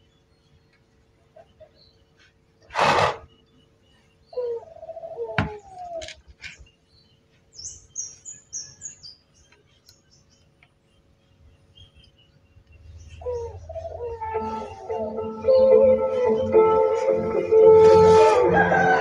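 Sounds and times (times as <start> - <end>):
small bird chirping: 5.5 - 16.6.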